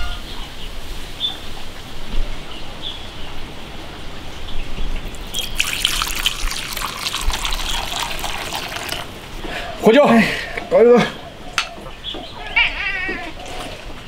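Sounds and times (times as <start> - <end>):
crackling splashing water: 5.0 - 9.4
water trickling and dripping: 5.0 - 9.4.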